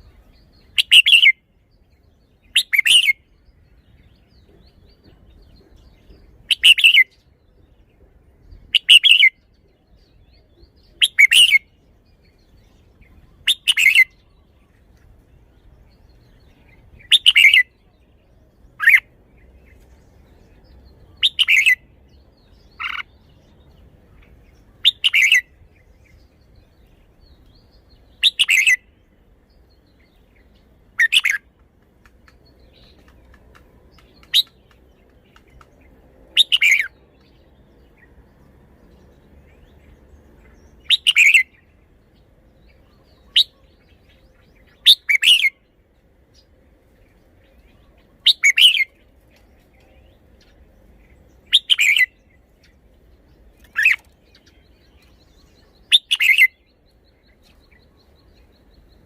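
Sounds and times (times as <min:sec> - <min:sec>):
bird singing short phrases: 0:00.0 - 0:07.8, 0:08.4 - 0:31.5, 0:47.4 - 0:59.0.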